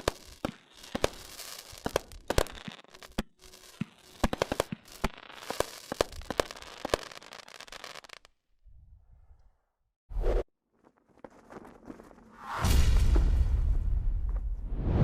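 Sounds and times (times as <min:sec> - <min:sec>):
firework bangs with crackling: 0:00.0 - 0:08.2.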